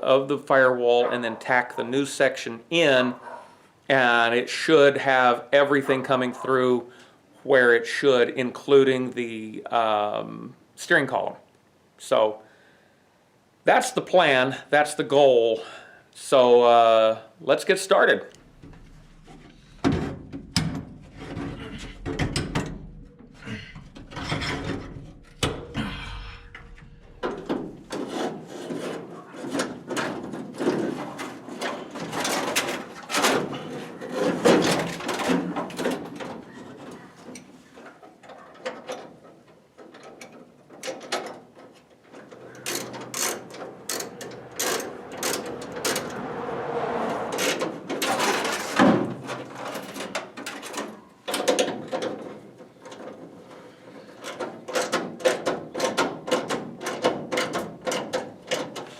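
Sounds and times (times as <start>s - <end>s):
mechanical rattles: 18.4s - 29.0s, 40.9s - 46.2s
tools clattering on metal parts: 38.3s - 46.2s, 47.5s - 53.2s.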